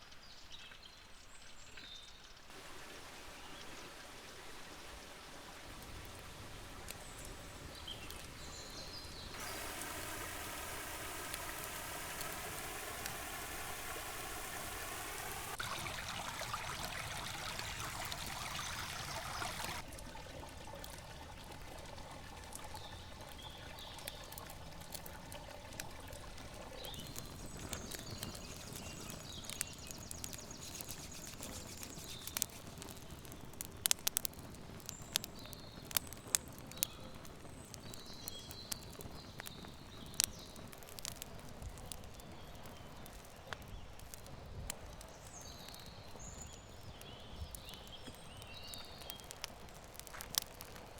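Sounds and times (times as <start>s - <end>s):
low outdoor background: 2.2s - 50.9s
birds chirping: 6.9s - 19.8s, 26.7s - 33.9s, 34.6s - 50.3s.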